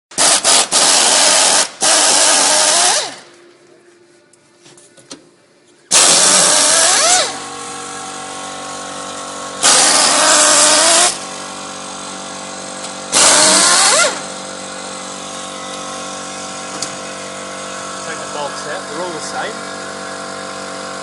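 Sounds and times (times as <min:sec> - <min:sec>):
power drill driving bolts: 0:00.2 - 0:03.2, 0:05.9 - 0:07.4, 0:09.0 - 0:11.2, 0:12.8 - 0:14.3
steady machine hum: 0:05.3 - 0:21.0.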